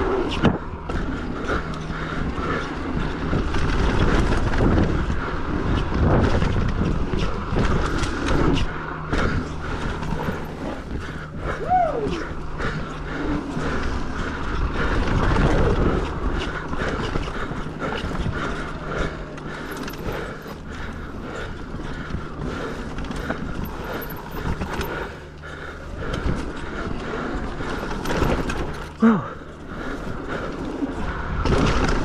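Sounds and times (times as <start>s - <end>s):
bike chain and frame rattling: 1.4s - 31.0s
tyres on dirt: 6.2s - 31.0s.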